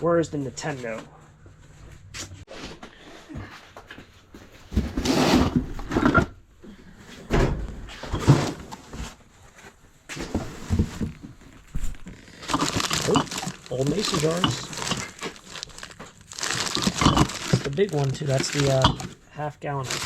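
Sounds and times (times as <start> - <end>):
boxes bumping and scraping: 4.5 - 20.0.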